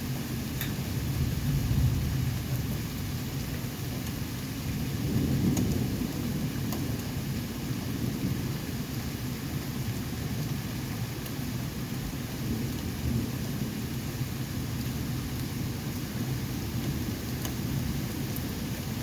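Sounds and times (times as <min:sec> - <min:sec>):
steady rain: 0:00.0 - 0:19.0
low thunder rumble: 0:00.8 - 0:03.3, 0:04.7 - 0:08.9.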